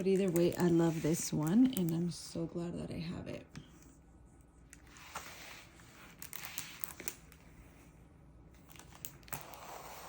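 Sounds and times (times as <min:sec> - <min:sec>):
plastic packaging crinkling: 0:00.0 - 0:02.2.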